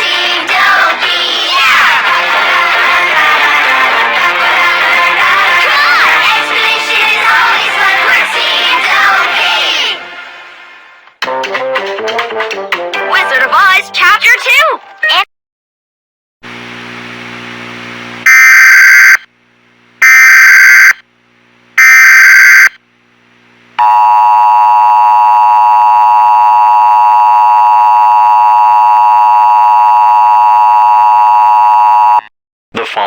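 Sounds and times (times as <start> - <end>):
low buzz: 16.5 - 18.3, 22.7 - 31.2.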